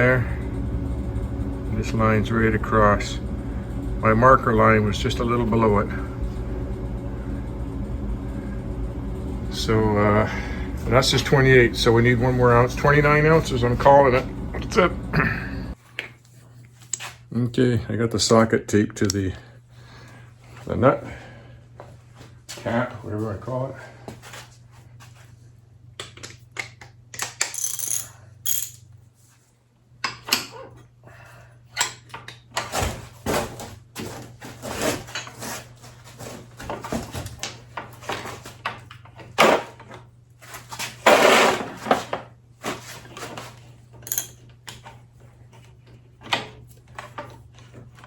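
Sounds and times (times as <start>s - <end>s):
metal tools clinking and knocking: 44.0s - 44.5s.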